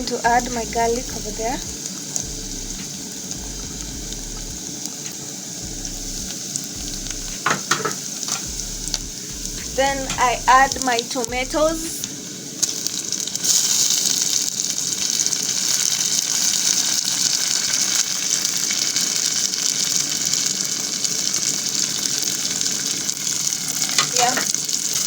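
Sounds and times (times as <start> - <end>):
tomatoes sizzling in hot oil: 10.0 - 25.0.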